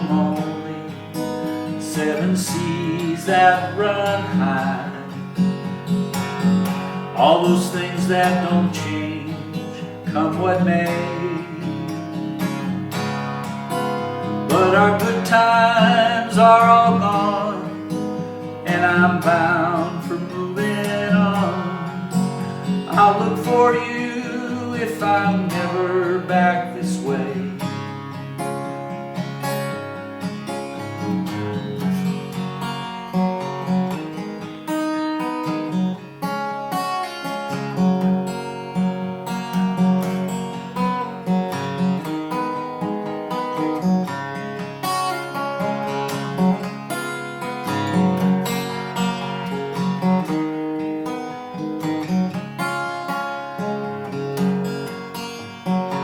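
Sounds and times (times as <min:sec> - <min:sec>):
acoustic guitar strumming: 0:00.0 - 0:56.0.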